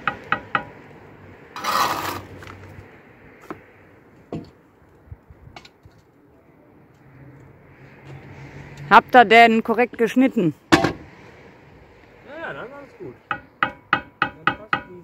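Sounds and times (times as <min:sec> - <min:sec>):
trowel scraping: 0:01.6 - 0:02.6.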